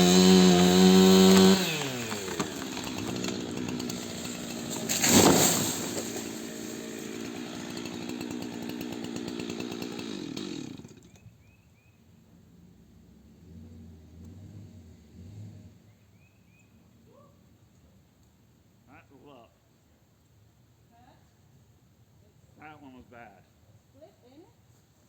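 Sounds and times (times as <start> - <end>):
chainsaw running: 0.0 - 11.3
faint bird chirps: 15.8 - 17.2.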